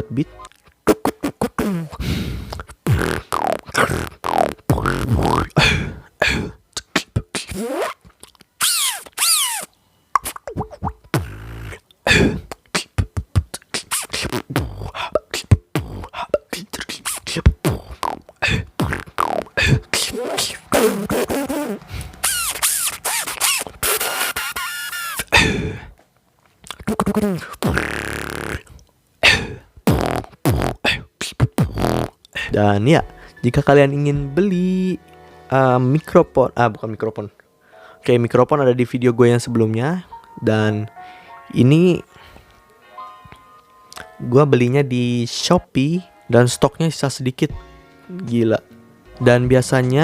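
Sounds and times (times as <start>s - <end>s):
person beatboxing: 0.0s - 25.9s, 26.6s - 32.6s.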